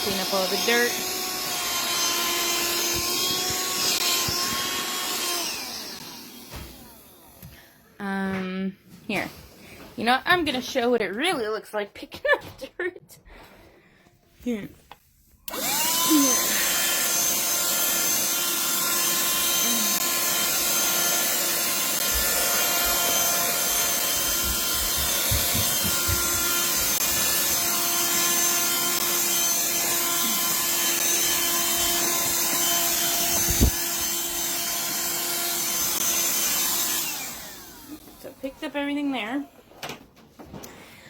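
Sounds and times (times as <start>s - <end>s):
handheld vacuum whining: 0.0s - 7.9s, 15.4s - 39.6s.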